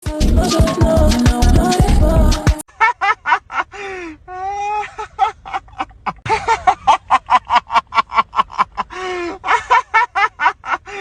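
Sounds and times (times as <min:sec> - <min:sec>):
high-pitched voice chanting: 0:00.0 - 0:02.6.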